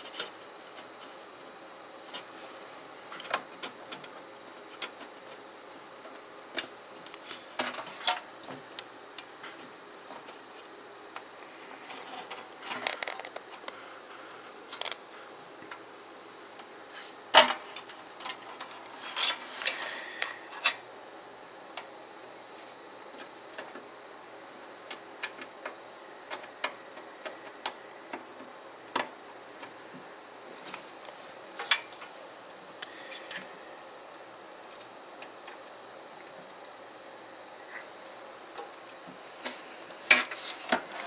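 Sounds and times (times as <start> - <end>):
plastic connectors clicking: 14.7 - 15.0.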